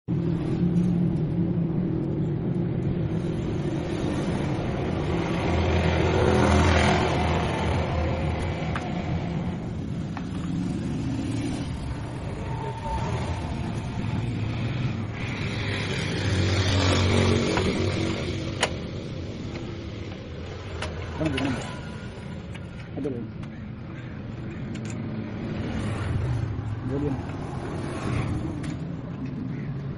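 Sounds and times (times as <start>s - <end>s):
motorcycle engine revving: 3.1s - 22.5s.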